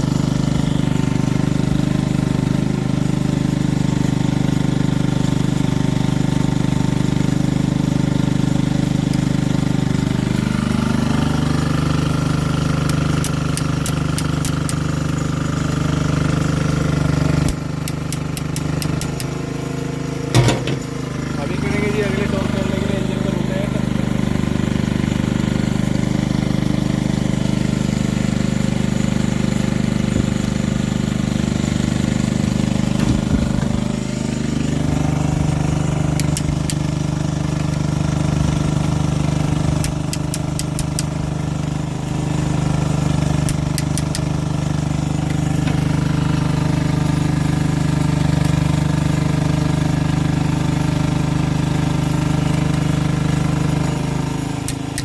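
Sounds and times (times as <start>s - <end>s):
low engine-like drone: 8.3s - 26.6s
sharp clicks: 12.7s - 15.0s, 17.4s - 19.4s, 36.1s - 36.9s, 39.8s - 41.2s, 43.4s - 44.4s, 54.6s - 55.0s.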